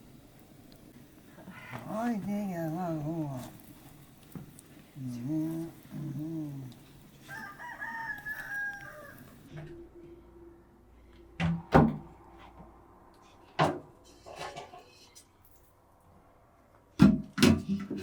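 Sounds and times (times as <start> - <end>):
rooster crowing: 7.1 - 9.5.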